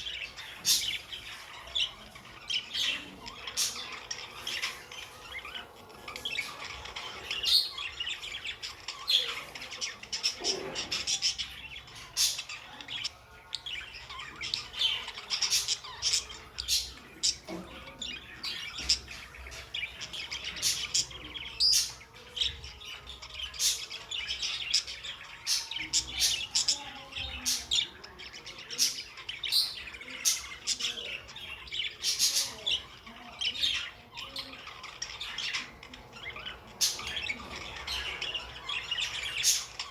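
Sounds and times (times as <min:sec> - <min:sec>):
budgies chirping: 0:00.0 - 0:39.9.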